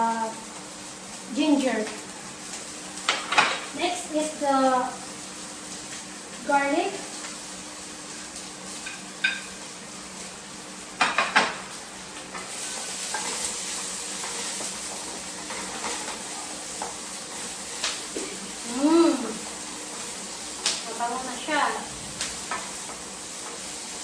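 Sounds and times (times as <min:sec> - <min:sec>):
steady sizzle: 0:00.0 - 0:24.0.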